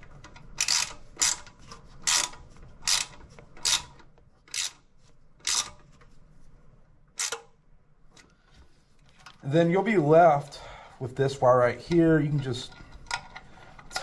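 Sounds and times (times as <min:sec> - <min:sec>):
ratchet wrench clicking: 0:00.6 - 0:04.8, 0:05.4 - 0:05.8, 0:07.2 - 0:07.5.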